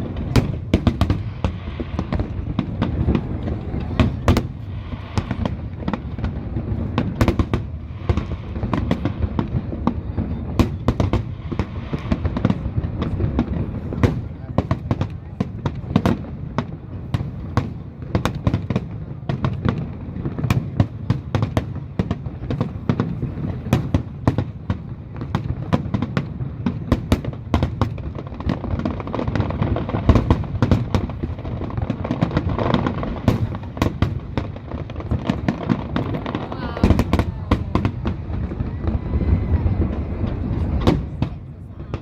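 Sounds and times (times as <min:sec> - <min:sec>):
rolling rumble and echo: 0:00.0 - 0:15.5
fireworks cracks and booms: 0:00.0 - 0:42.0.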